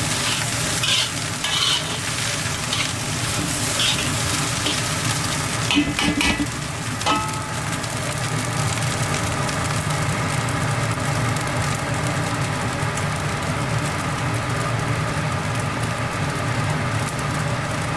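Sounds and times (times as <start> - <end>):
kitchen equipment humming: 0.0 - 14.7.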